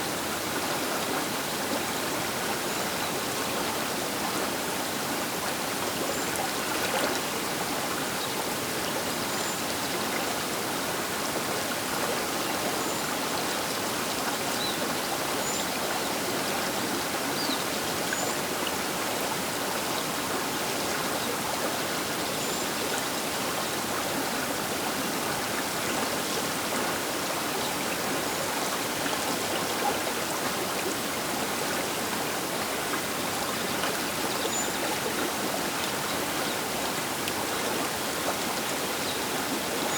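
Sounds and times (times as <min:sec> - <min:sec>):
river water rushing: 0:00.1 - 0:09.2.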